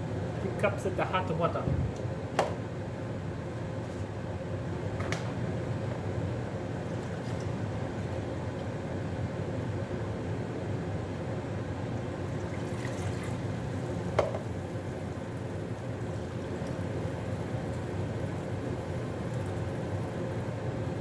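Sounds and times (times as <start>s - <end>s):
food cooking in pan: 13.0s - 21.0s.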